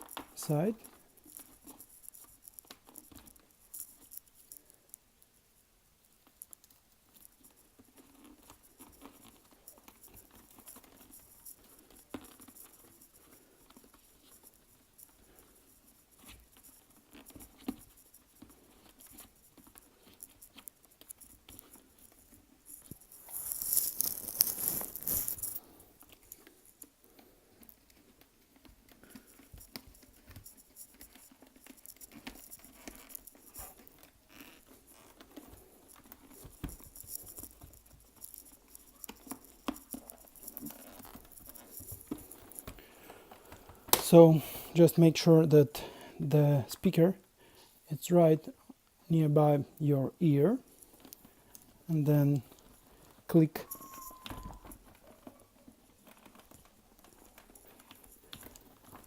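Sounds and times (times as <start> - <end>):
hands clicking and rustling in helmet: 0.0 - 59.0
scraping rustle: 6.4 - 43.9.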